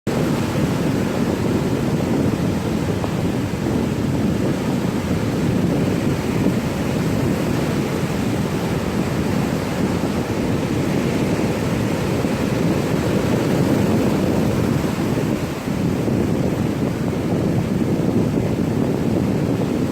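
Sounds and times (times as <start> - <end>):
ocean waves breaking: 0.1 - 19.9.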